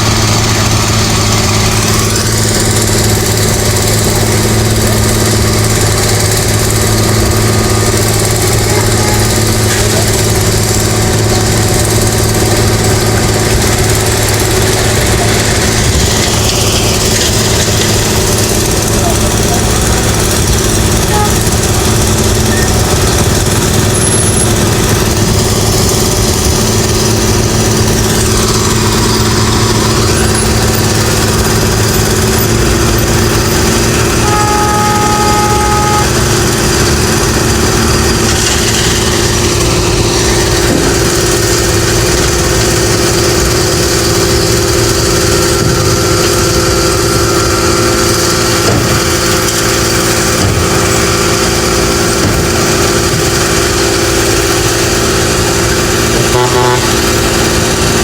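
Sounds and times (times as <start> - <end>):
construction machinery engines: 0.0 - 58.0
horn: 21.1 - 21.6, 34.2 - 36.3, 56.2 - 57.2.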